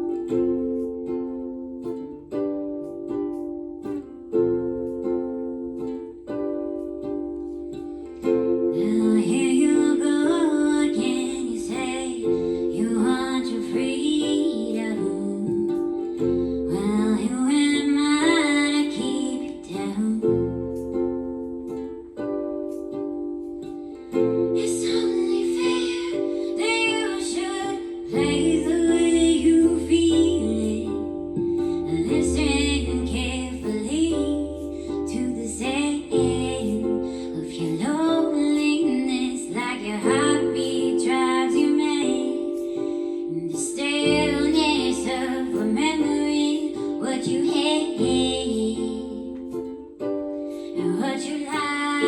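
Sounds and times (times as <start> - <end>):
plucked string accompaniment: 0.0 - 52.0
woman singing: 8.7 - 20.7, 24.5 - 49.4, 50.7 - 52.0.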